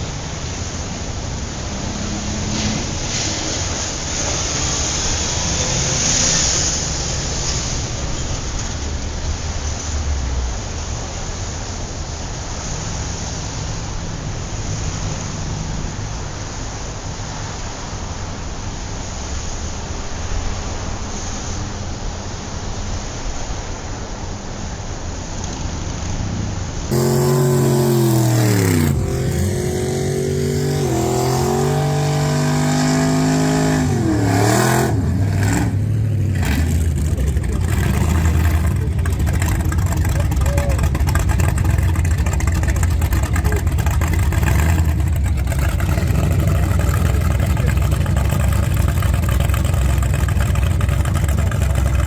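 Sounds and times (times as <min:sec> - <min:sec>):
background noise wash: 0:00.0 - 0:52.0
engine rumbling steadily: 0:00.0 - 0:52.0
engine revving: 0:01.6 - 0:07.6, 0:26.9 - 0:52.0.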